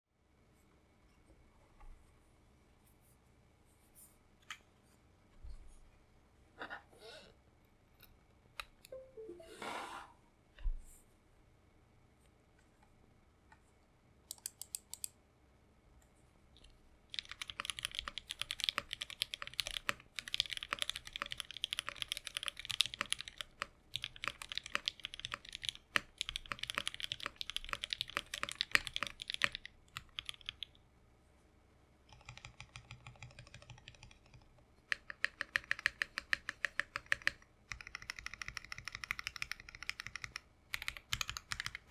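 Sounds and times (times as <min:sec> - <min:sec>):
mechanical keyboard typing: 0:14.3 - 0:15.1, 0:17.1 - 0:30.7, 0:32.1 - 0:41.9.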